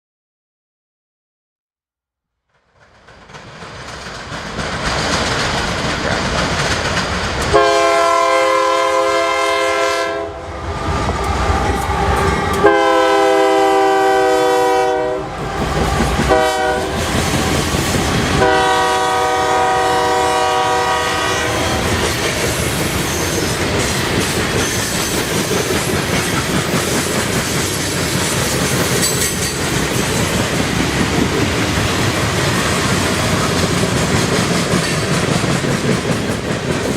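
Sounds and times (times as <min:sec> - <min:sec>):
train wheels clattering over rails: 0:02.7 - 0:08.0, 0:15.3 - 0:36.9
locomotive air horn: 0:07.5 - 0:10.5, 0:12.2 - 0:15.5, 0:16.2 - 0:17.2, 0:18.4 - 0:22.0.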